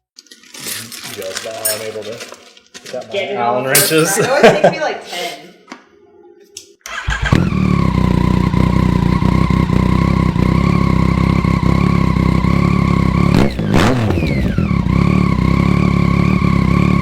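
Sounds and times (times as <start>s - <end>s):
motorcycle engine idling: 7.0s - 13.6s, 14.3s - 17.0s.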